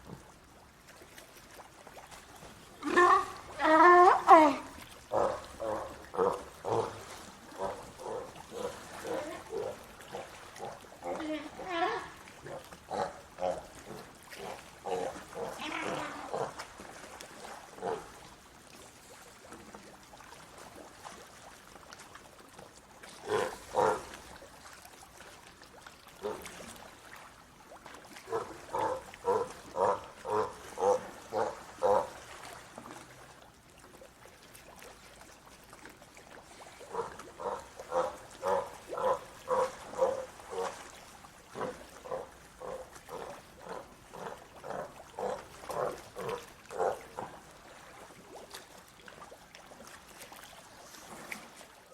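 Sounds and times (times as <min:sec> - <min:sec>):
sea lion barking: 0:02.8 - 0:07.0, 0:36.9 - 0:40.8, 0:41.6 - 0:47.3.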